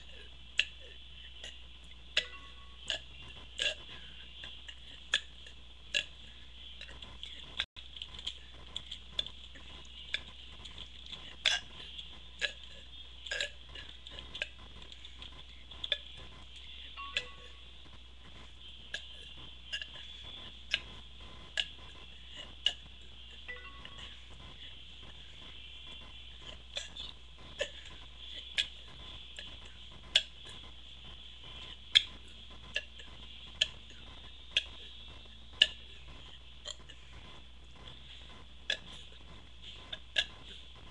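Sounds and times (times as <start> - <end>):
throat gulping clicks: 0.0 - 16.6, 38.6 - 40.9.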